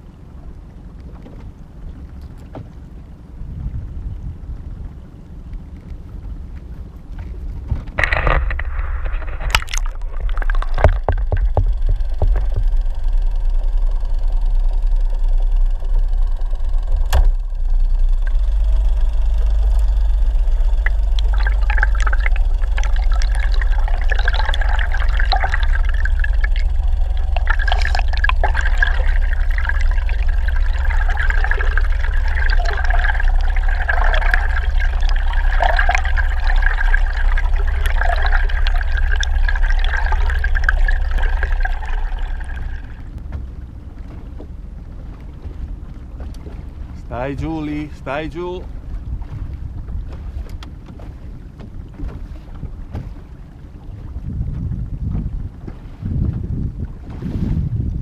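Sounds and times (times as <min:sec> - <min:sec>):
water rushing and gurgling: 0:00.0 - 0:57.7
low rumble: 0:00.0 - 0:58.0
knocks and clatters: 0:07.2 - 0:12.9.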